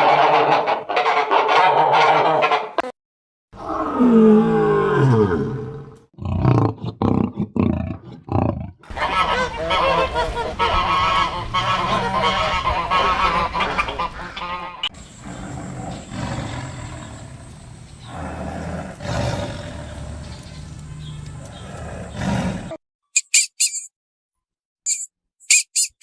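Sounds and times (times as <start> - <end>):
waterfowl honking in chorus: 0.0 - 2.8, 8.9 - 14.9.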